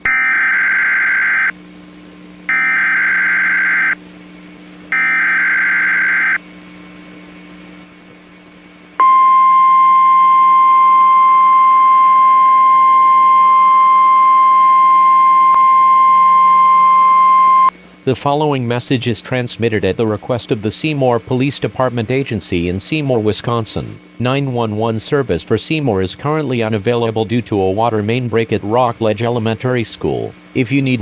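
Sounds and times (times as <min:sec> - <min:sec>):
steady loud warning alarm tone: 0:00.0 - 0:01.6, 0:02.5 - 0:04.0, 0:04.9 - 0:06.4, 0:09.0 - 0:17.7.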